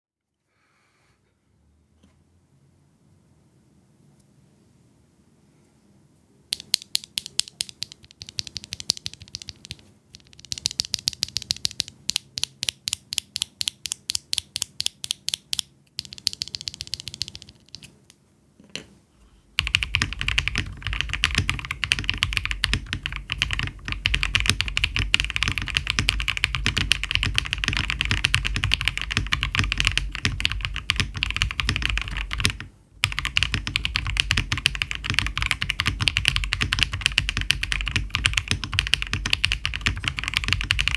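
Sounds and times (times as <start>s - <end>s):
mechanical keyboard typing: 6.5s - 18.0s, 19.6s - 40.9s.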